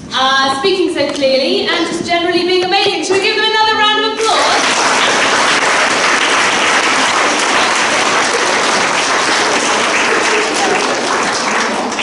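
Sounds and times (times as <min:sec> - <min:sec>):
children applauding: 0:04.2 - 0:12.0.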